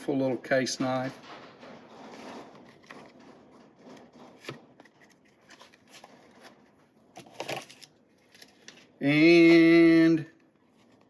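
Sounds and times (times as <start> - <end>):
rustling: 0.7 - 9.0.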